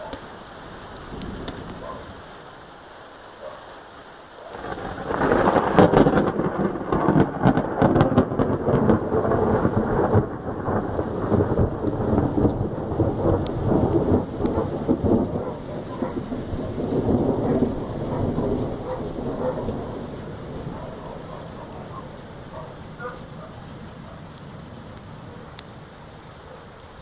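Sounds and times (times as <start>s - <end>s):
thunder rolling: 4.6s - 24.2s.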